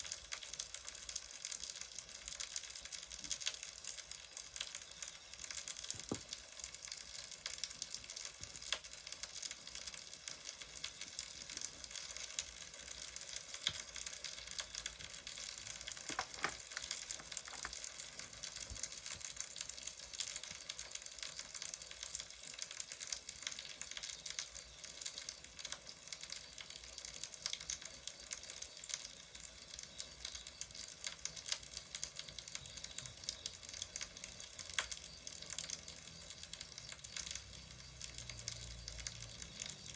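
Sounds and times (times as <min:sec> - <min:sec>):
wood fire crackling: 0:00.0 - 0:39.9
sharp fire pops: 0:10.7 - 0:21.9.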